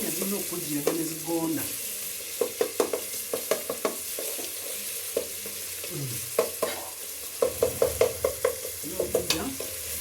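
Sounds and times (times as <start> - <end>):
tomatoes sizzling in oil: 0.0 - 10.0
spoon knocking against pan: 2.2 - 5.4, 6.3 - 9.8.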